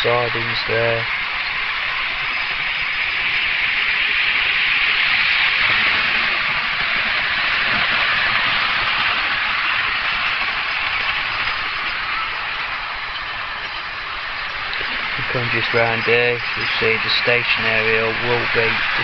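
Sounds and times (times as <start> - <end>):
model train running: 0.0 - 19.0.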